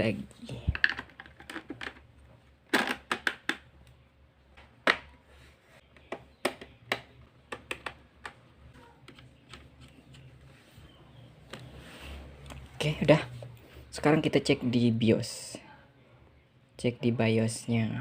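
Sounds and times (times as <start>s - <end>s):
plastic clicks and taps: 5.9s - 8.4s.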